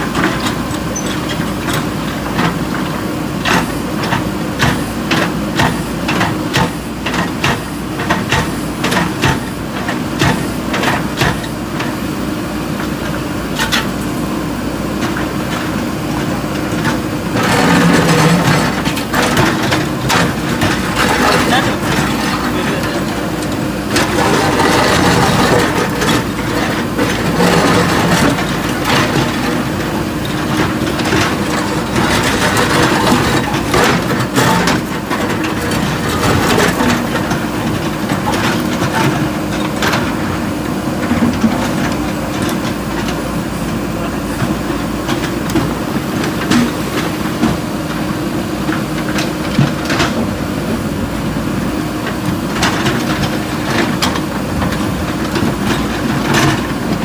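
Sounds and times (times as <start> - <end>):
diesel engine running: 0.0 - 57.0
knocks and clatter: 16.6 - 40.3, 52.0 - 57.0.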